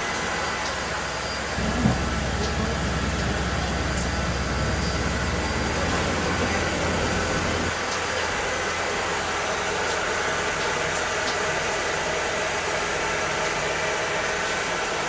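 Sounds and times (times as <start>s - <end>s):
machinery hiss and whir: 0.0s - 15.0s
low rumble: 1.5s - 7.7s.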